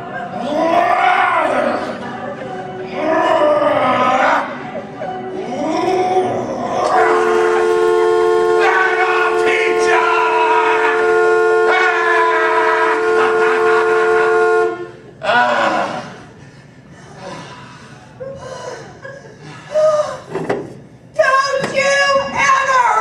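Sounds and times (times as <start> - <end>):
two-note car horn blast: 6.8 - 15.1.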